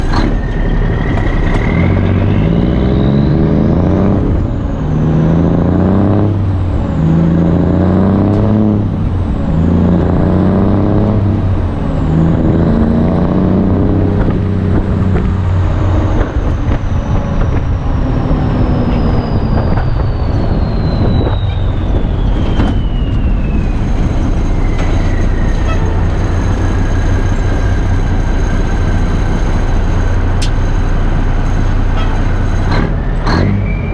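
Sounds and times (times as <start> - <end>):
diesel truck engine shifting gears: 0.0 - 33.9
high whistle: 18.8 - 29.2.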